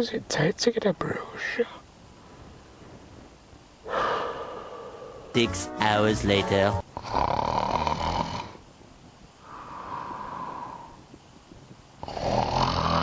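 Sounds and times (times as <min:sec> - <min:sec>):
person snoring: 0:03.8 - 0:05.4, 0:07.0 - 0:08.6, 0:09.4 - 0:11.0, 0:12.0 - 0:13.0.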